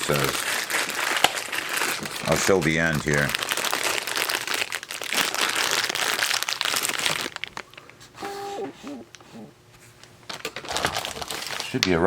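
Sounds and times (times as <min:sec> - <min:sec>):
plastic packaging crinkling: 0:00.0 - 0:08.2, 0:09.9 - 0:12.0.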